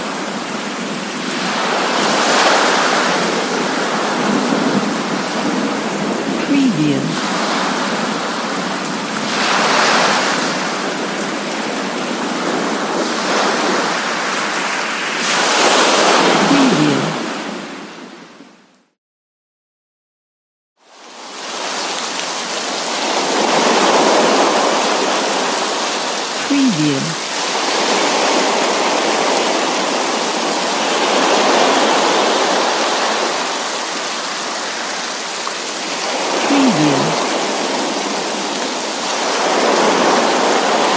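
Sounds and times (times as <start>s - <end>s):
steady rain: 0.0s - 18.5s, 20.8s - 40.9s
sea waves washing in: 0.2s - 6.5s, 7.2s - 18.3s
rain hiss: 21.0s - 26.5s.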